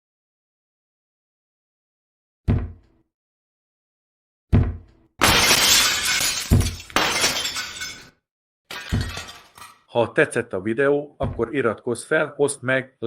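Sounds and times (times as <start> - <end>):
shattering crash: 5.2 - 8.1, 8.7 - 9.8.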